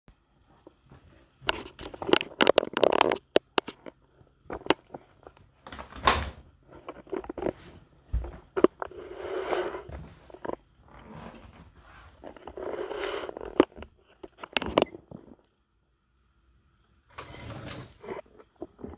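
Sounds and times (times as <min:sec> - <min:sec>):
rustling scrape: 0:08.6 - 0:14.9, 0:17.1 - 0:18.9.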